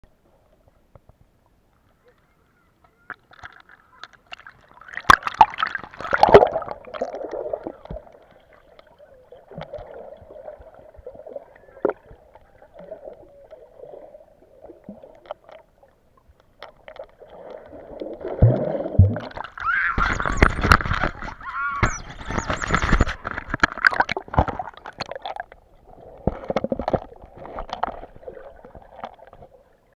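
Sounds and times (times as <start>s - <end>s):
muffled water sloshing: 1.8s - 29.9s
knocks and splashes: 3.1s - 8.2s, 16.5s - 29.6s.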